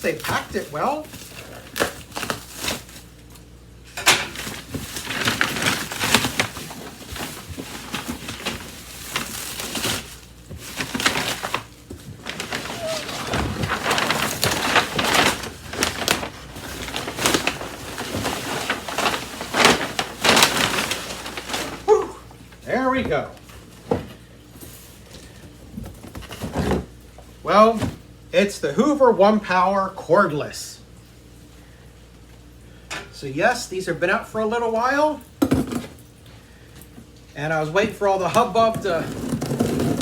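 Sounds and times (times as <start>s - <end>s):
cardboard and packing rustling: 0.0s - 28.1s, 36.8s - 40.0s.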